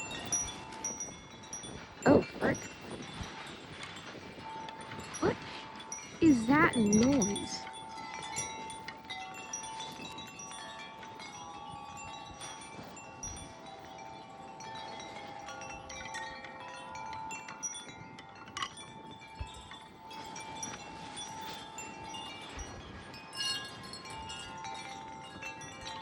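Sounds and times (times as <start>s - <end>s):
strong wind gusts: 0.0s - 7.7s
wind chime ringing: 0.0s - 26.0s.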